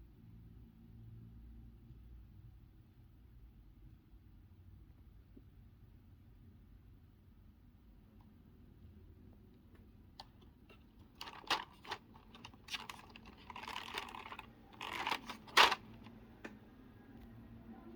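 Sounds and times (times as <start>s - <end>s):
rustling: 10.2s - 16.0s
plastic keycaps clicking: 11.2s - 15.9s.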